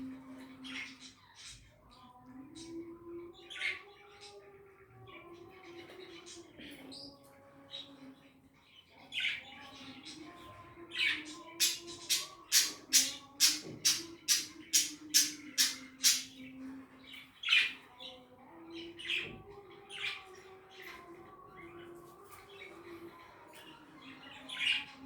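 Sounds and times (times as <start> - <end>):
budgerigars squawking: 11.6 - 16.3.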